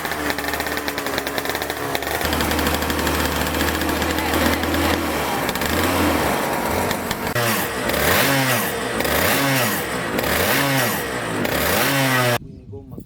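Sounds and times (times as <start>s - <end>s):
go-kart engine revving: 0.0s - 12.4s.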